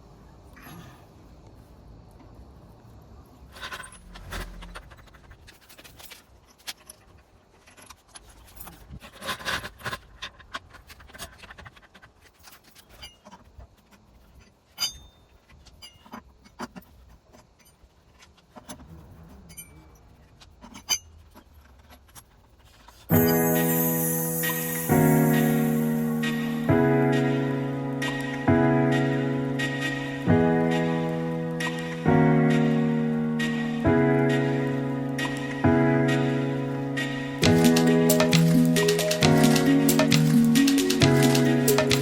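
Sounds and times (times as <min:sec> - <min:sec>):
metal tools clinking and scraping: 0:14.8 - 0:16.3, 0:19.4 - 0:21.8.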